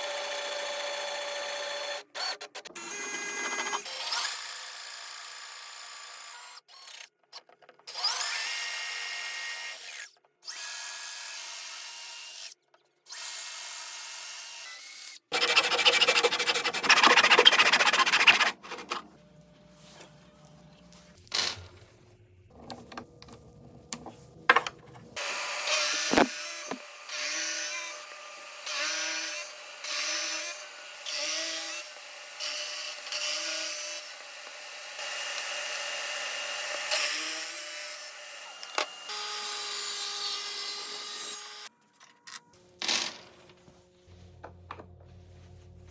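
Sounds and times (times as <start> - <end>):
power drill cutting wood: 13.1 - 18.9, 25.2 - 41.7.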